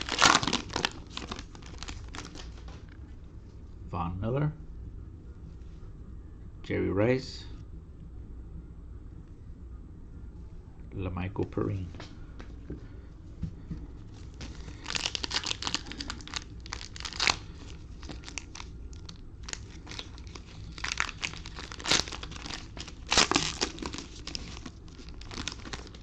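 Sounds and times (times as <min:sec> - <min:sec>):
cellophane wrapper crinkling: 0:00.0 - 0:02.8, 0:14.2 - 0:26.0.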